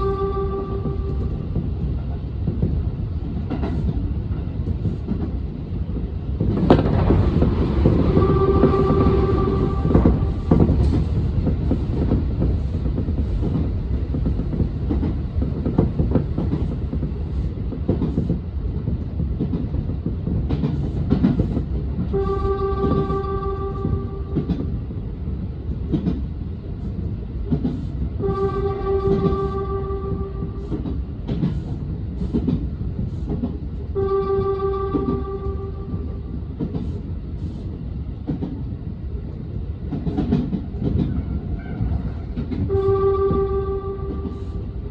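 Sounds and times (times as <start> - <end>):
train horn: 0.0 - 1.5, 7.8 - 11.0, 22.1 - 24.6, 28.2 - 30.8, 33.8 - 36.3, 41.2 - 44.8
train running over rails: 0.0 - 44.9.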